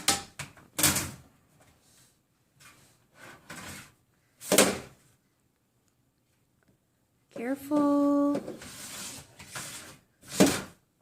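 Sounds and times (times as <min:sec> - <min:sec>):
objects scraping: 0:02.6 - 0:04.8, 0:07.8 - 0:10.8.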